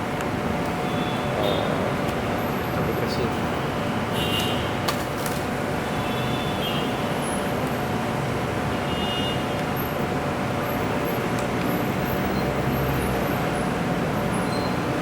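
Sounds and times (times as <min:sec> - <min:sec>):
road traffic rumble: 0:00.0 - 0:15.0.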